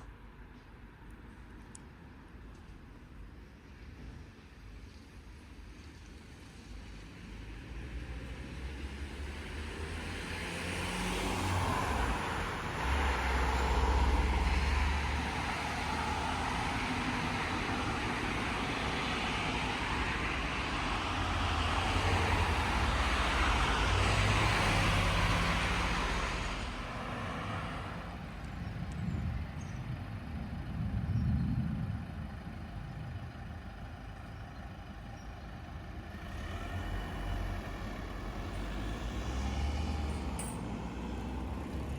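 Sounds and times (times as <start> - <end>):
quieter vehicle passing: 7.3 - 41.9
vehicle passing: 7.9 - 33.2, 35.6 - 41.9.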